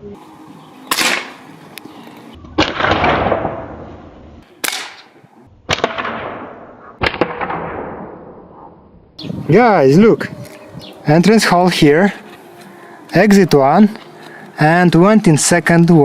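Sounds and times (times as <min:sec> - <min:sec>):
air rifle shots: 0:00.9 - 0:01.4, 0:02.6 - 0:03.9, 0:04.6 - 0:08.7.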